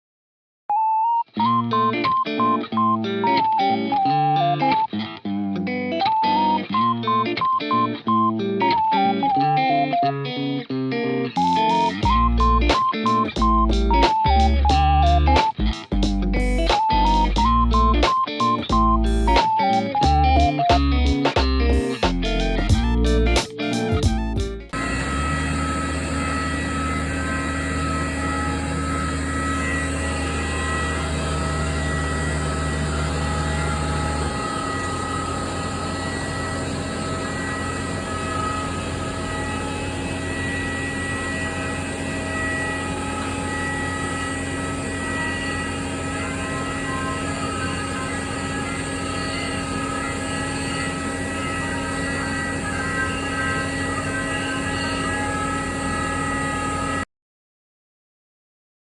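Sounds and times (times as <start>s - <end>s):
jet engines whining and rumbling: 11.4s - 20.2s, 22.0s - 57.0s.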